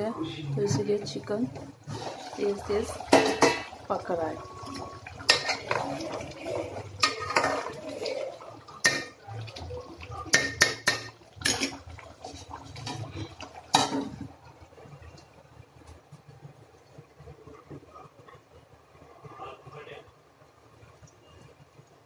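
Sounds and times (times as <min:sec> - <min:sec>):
metal utensil clinking on pan: 0:05.2 - 0:05.8.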